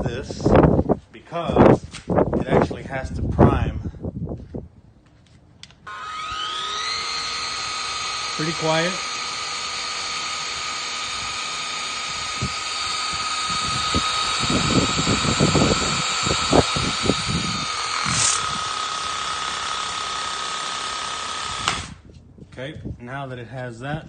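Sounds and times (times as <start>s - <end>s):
pressure washer motor whine: 5.8s - 22.0s.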